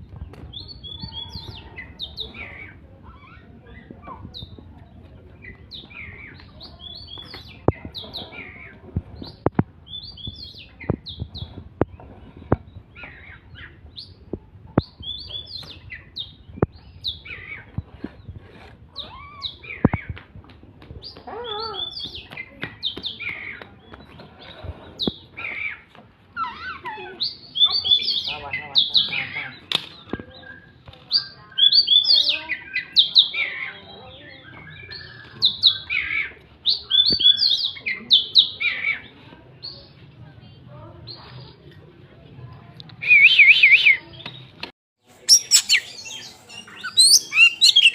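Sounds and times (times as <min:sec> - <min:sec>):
bird singing whistles and chirps: 0:34.4 - 0:36.1, 0:45.2 - 0:47.9.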